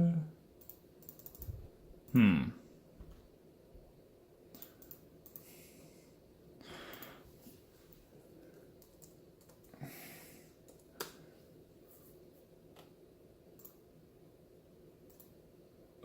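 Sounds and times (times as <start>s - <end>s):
computer clicks: 0.6s - 2.2s, 4.5s - 5.5s, 6.8s - 7.2s, 8.7s - 9.8s, 13.6s - 13.8s, 15.1s - 15.4s.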